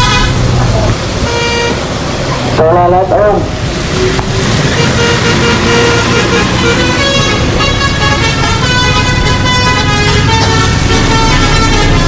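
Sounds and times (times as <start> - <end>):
bus musical horn tune: 0.0 - 0.5, 1.2 - 2.0, 4.6 - 12.0
bus engine running: 0.0 - 12.0.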